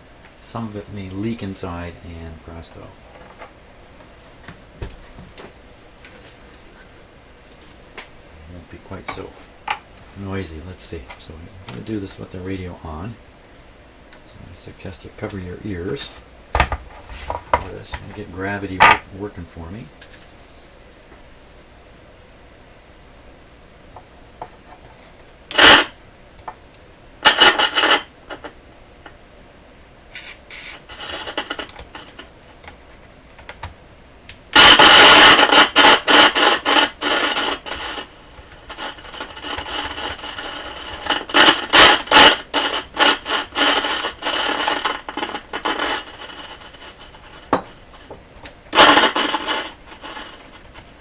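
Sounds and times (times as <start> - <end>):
radio speaker crackling: 0.0 - 21.4, 23.8 - 29.3, 30.1 - 51.0.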